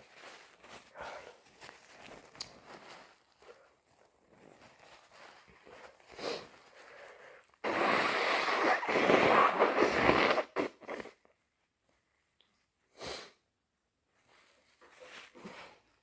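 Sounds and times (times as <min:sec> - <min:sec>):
person sniffing: 0:06.1 - 0:11.2, 0:12.9 - 0:13.4
person blowing nose: 0:06.1 - 0:11.3, 0:13.0 - 0:13.4.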